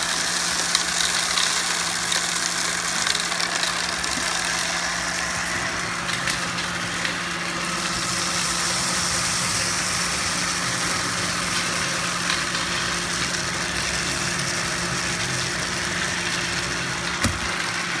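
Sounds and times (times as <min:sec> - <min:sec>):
vacuum cleaner running: 0:00.0 - 0:18.0.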